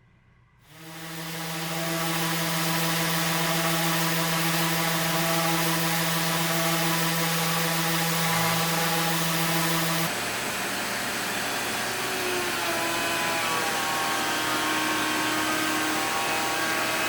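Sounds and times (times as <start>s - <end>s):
power tool motor whine: 0.7s - 17.0s.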